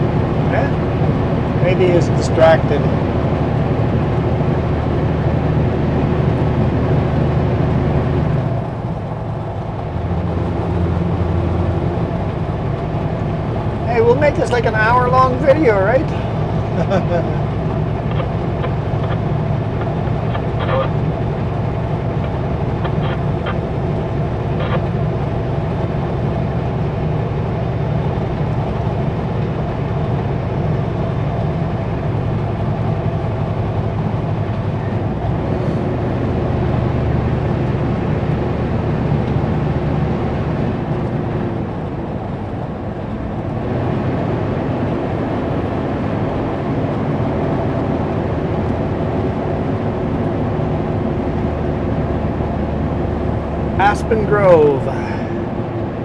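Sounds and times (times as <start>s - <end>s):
road noise: 0.0s - 56.0s
truck diesel engine droning: 0.0s - 56.0s.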